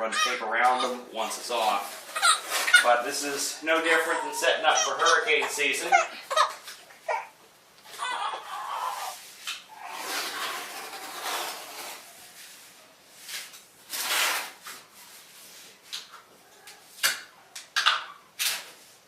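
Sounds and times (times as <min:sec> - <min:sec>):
tape tearing or patting: 0:09.5 - 0:12.0, 0:13.9 - 0:14.8.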